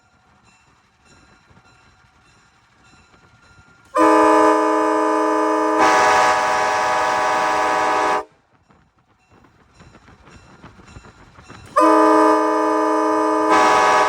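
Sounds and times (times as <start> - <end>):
air horn chord: 4.0 - 8.3, 11.8 - 14.0.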